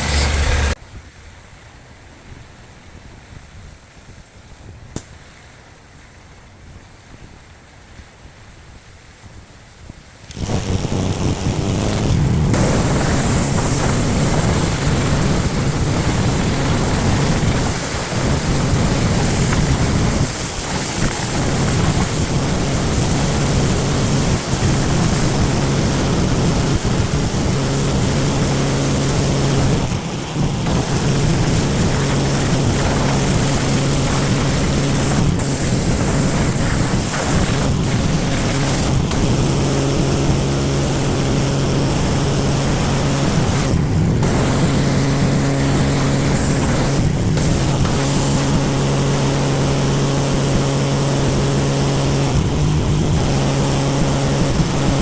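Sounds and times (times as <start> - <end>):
pressure washer machine hum: 0.0 - 0.8, 10.3 - 55.0
pressure washer water jet hissing: 0.0 - 0.8, 10.2 - 55.0.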